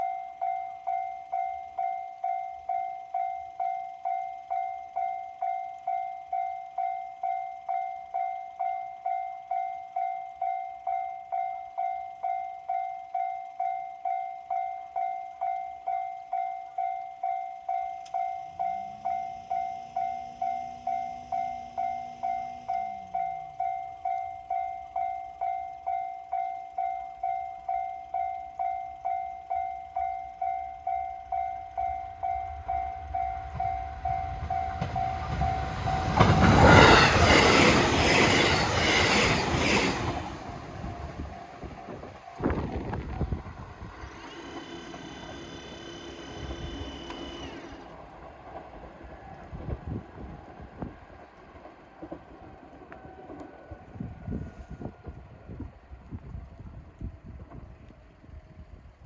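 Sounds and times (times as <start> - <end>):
level crossing alarm bell: 0.0 - 42.4.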